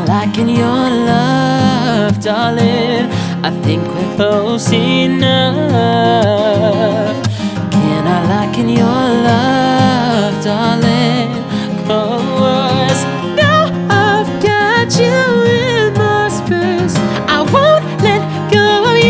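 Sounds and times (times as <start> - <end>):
band music with guitar: 0.0 - 19.0
wordless vibrato melody: 6.8 - 19.0.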